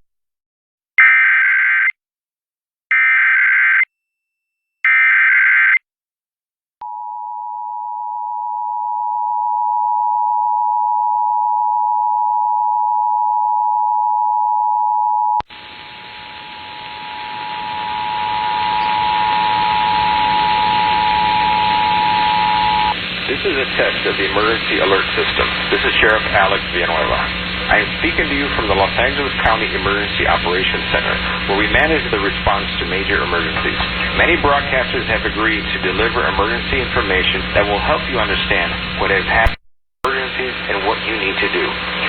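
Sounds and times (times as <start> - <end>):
digital data header bursts: 15.6 - 39.4
two-tone attention signal: 16.5 - 23.0.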